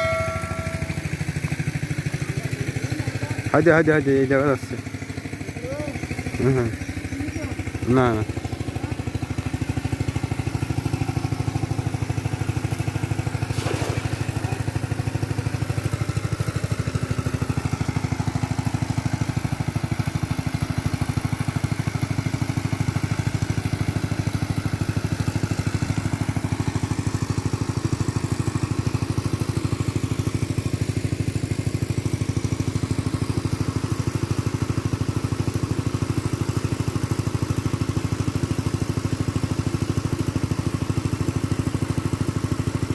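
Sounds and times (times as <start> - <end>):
small engine running: 0.0 - 42.9.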